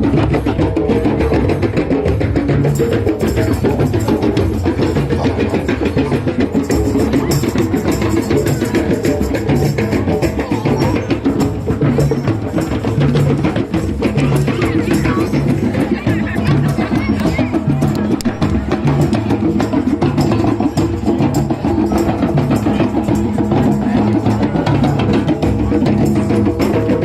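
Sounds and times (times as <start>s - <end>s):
hand drums playing: 0.0s - 27.0s.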